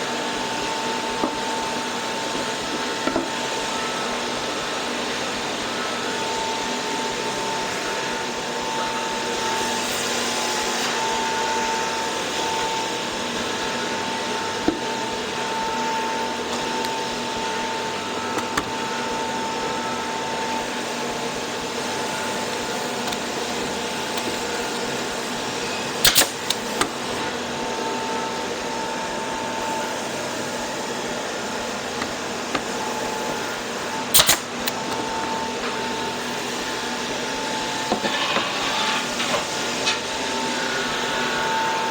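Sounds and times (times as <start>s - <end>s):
power tool whirring: 0.0s - 41.9s
brad nailer shots: 21.7s - 27.1s, 31.4s - 41.2s.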